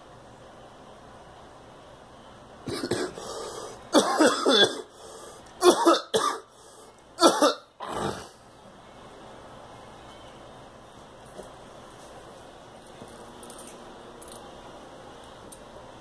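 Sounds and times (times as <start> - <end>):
girl coughing: 2.7 - 3.2, 4.0 - 4.9, 5.6 - 6.5, 7.2 - 7.7.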